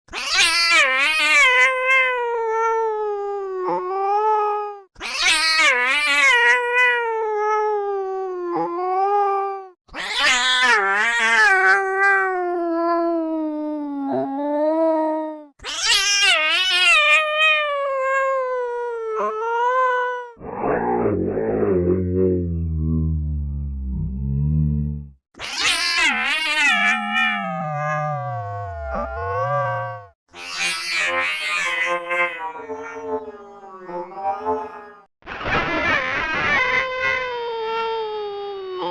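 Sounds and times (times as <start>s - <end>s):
angry cat yowling: 0.1s - 2.9s, 9.9s - 21.4s, 25.4s - 32.9s.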